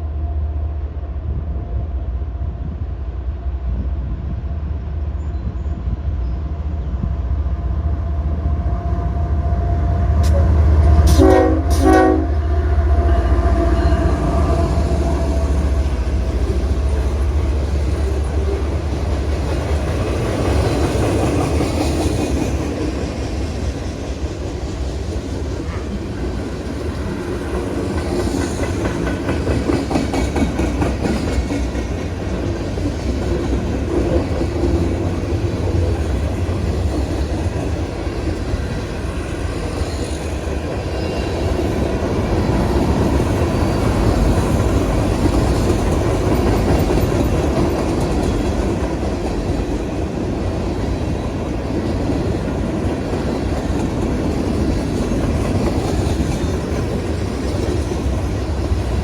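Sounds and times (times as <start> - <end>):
train cars rumbling past: 0.0 - 59.0
wheels clacking over rail joints: 13.9 - 59.0.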